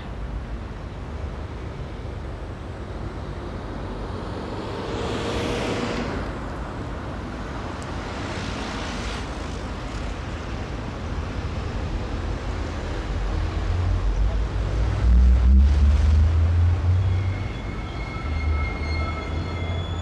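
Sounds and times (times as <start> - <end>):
city background rumble: 0.0 - 20.0
vehicle passing: 3.8 - 10.1.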